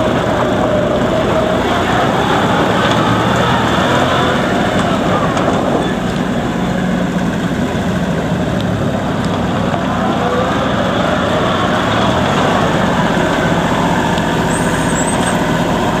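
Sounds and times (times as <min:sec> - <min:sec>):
diesel engine running: 0:00.0 - 0:16.0.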